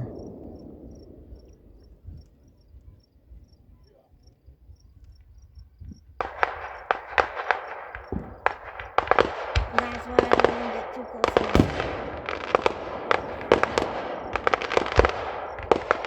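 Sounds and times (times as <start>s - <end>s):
fireworks crackling and popping: 5.9s - 16.0s.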